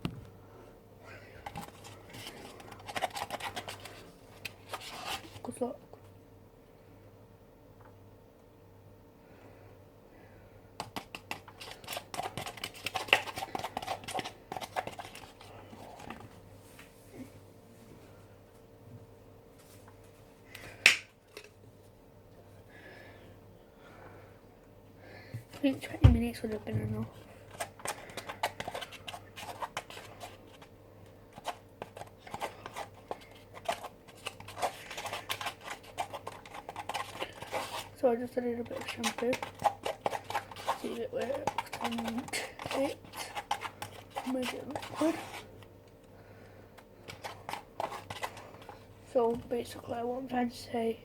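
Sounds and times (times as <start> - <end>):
utensil stirring slime in bowl: 1.4 - 5.8, 10.8 - 16.4, 25.5 - 46.0, 46.7 - 50.4.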